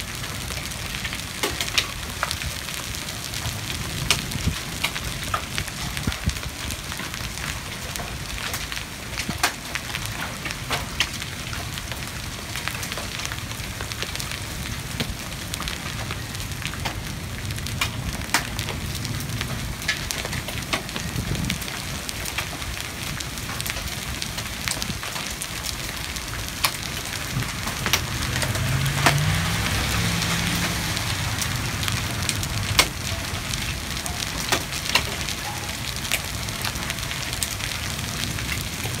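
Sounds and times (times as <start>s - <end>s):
hailstones striking hard surfaces: 0.0s - 39.0s
rain hissing: 0.0s - 39.0s.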